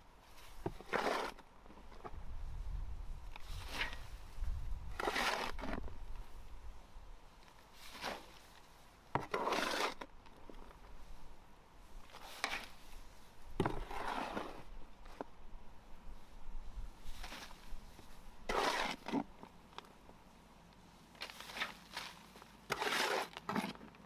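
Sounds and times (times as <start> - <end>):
dry leaves and twigs rustling: 20.8 - 22.6.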